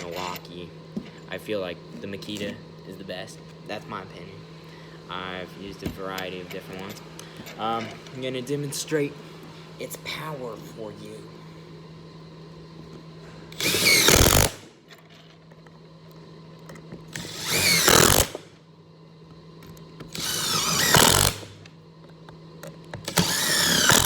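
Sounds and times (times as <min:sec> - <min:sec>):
impact driver driving screws into wood: 0:13.6 - 0:14.7, 0:17.1 - 0:18.5, 0:20.0 - 0:21.6, 0:23.0 - 0:24.0.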